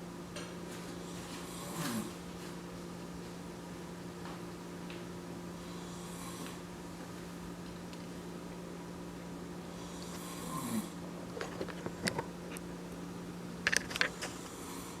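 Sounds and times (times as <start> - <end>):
man snoring: 1.4 - 2.2, 5.8 - 6.6, 9.7 - 11.0.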